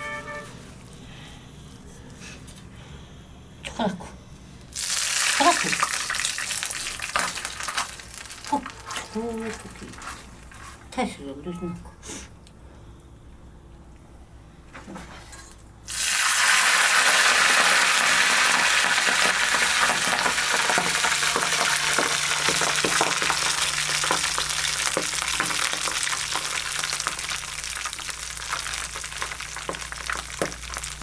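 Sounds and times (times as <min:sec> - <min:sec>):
food sizzling in hot oil: 0:04.8 - 0:08.8, 0:15.9 - 0:31.0.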